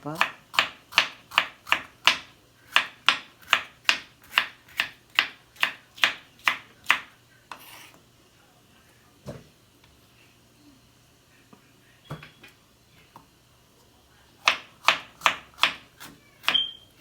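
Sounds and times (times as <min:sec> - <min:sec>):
knife chopping on cutting board: 0:00.2 - 0:08.0, 0:14.4 - 0:16.7.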